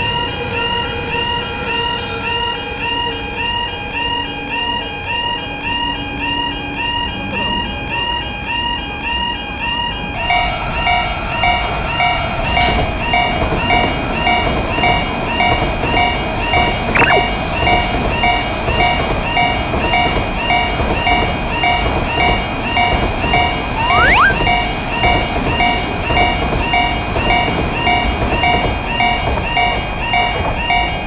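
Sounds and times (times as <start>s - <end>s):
whistle-like glides: 17.0s - 17.3s, 23.8s - 24.4s.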